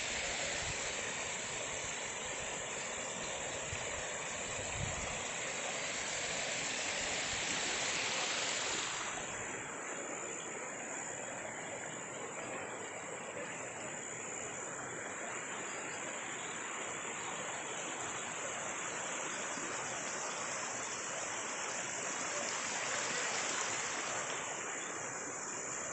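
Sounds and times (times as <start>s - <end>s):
running water rushing: 0.0s - 25.9s.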